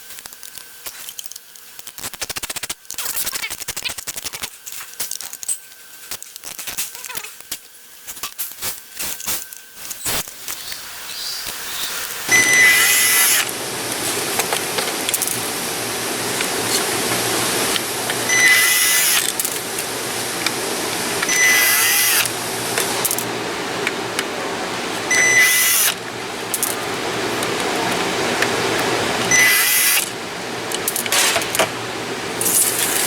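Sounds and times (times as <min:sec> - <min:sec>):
cordless power screwdriver running: 0:12.3 - 0:15.4, 0:16.3 - 0:19.8, 0:20.4 - 0:23.3, 0:25.1 - 0:26.0, 0:29.3 - 0:30.1.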